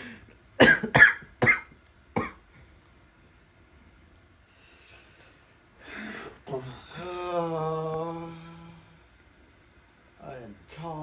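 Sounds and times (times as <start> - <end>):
man coughing: 0.6 - 2.4.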